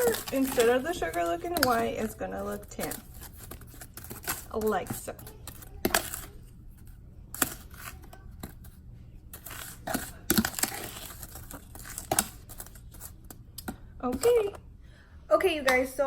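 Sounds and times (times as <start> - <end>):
gritty sugar rustling: 0.0 - 14.5.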